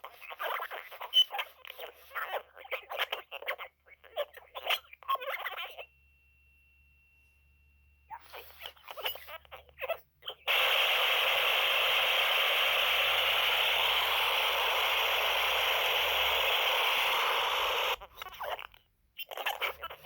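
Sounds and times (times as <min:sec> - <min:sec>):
toy speaker static hiss: 0:10.4 - 0:18.0.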